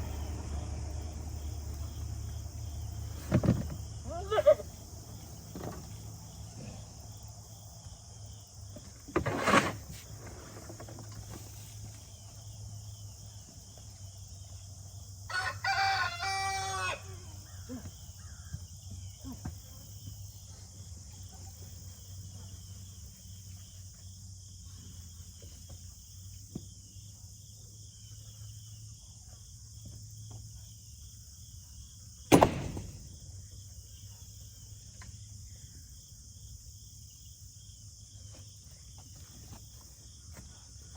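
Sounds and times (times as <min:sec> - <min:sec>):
crickets chirping: 0:00.0 - 0:40.9
rooster crowing: 0:15.3 - 0:17.5
sharp knocks: 0:32.3 - 0:33.2.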